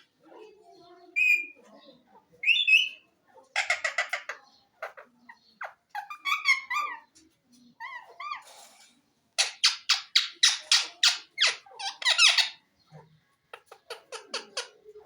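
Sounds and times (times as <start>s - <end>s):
parrot chirps: 2.4s - 3.0s, 3.6s - 7.1s, 9.4s - 12.6s
parrot screeching: 9.4s - 12.6s.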